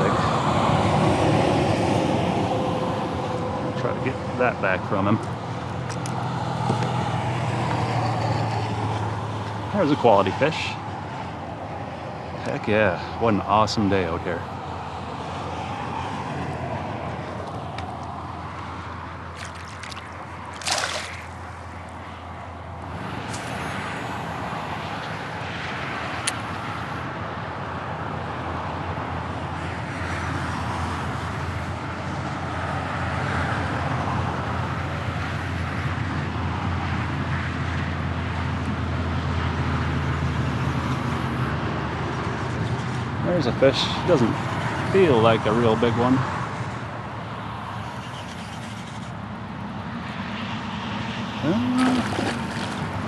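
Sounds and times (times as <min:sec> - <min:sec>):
highway traffic road noise: 0:00.0 - 0:53.0
water sloshing and trickling: 0:19.2 - 0:22.0, 0:51.6 - 0:53.0.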